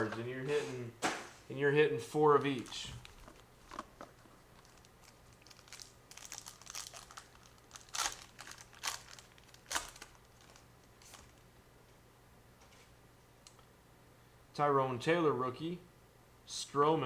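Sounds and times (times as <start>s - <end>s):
foil wrapper tearing and crinkling: 2.3s - 11.4s.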